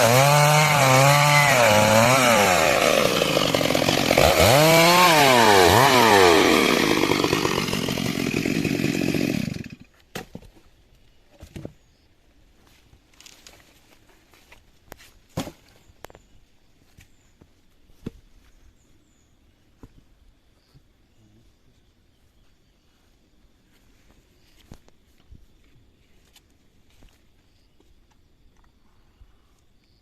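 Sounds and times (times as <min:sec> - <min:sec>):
chainsaw running: 0:00.0 - 0:09.9.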